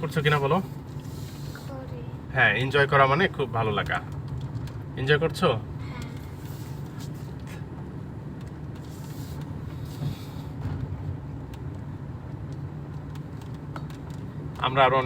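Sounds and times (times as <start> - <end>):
car engine and tyre hum: 0.0 - 15.0.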